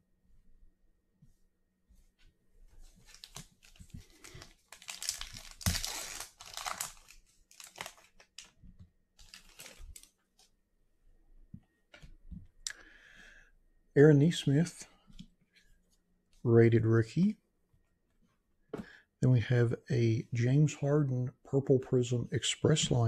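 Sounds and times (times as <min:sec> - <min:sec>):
packaging crinkling and rustling: 0:02.8 - 0:08.6, 0:09.2 - 0:10.5.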